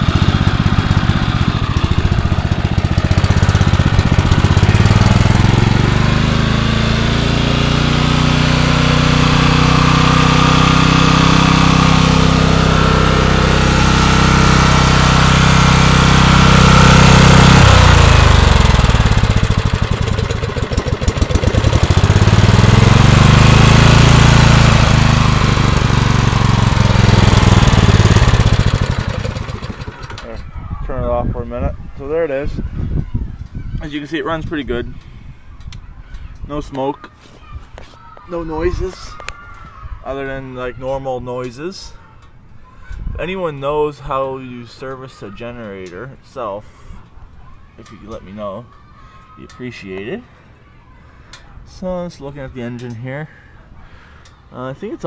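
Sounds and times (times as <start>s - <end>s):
generator engine droning: 0.0s - 30.5s.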